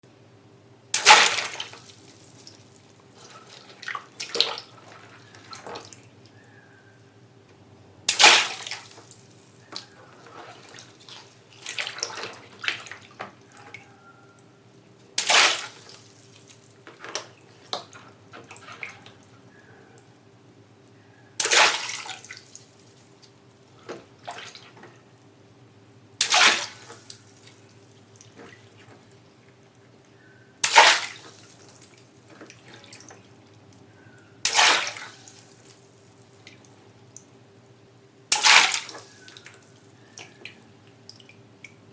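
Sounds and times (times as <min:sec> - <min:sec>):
water balloons popping: 0:00.9 - 0:02.4, 0:08.1 - 0:09.8, 0:15.2 - 0:16.0, 0:26.2 - 0:27.2, 0:34.4 - 0:35.3
water splashing: 0:01.0 - 0:06.1, 0:08.1 - 0:13.7, 0:15.2 - 0:19.2, 0:21.4 - 0:24.8, 0:26.2 - 0:29.2, 0:30.6 - 0:33.6, 0:34.5 - 0:37.3, 0:38.3 - 0:41.8
water dripping: 0:01.0 - 0:07.1, 0:08.1 - 0:20.2, 0:26.2 - 0:41.9.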